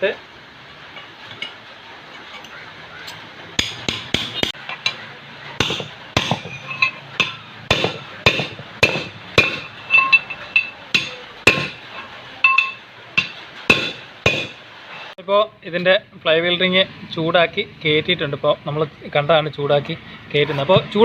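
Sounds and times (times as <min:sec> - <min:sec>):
hammer striking metal: 0:03.1 - 0:05.0, 0:05.6 - 0:14.6.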